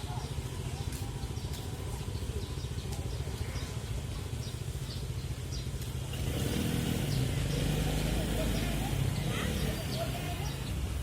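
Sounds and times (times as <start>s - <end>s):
motorbike traffic rumble: 0.0s - 11.0s.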